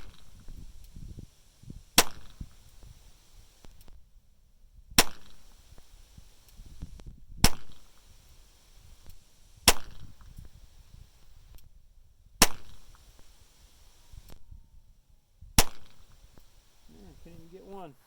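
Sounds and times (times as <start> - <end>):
pistol shots: 2.0 - 2.6, 5.0 - 5.6, 7.4 - 8.1, 9.7 - 10.2, 12.4 - 13.1, 15.6 - 16.3.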